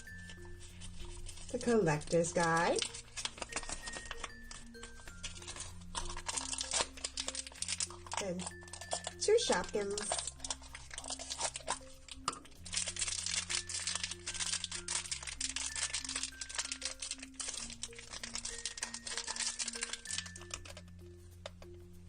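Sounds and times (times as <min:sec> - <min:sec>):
plastic packaging crinkling: 0:00.0 - 0:22.0
simple melody with bass: 0:19.4 - 0:22.0.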